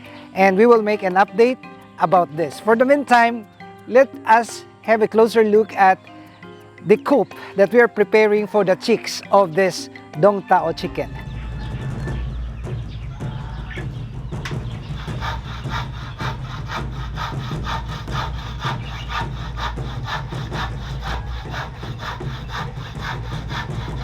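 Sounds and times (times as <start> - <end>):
steady low hum: 12.5 - 24.0
hand saw cutting wood: 15.0 - 24.0.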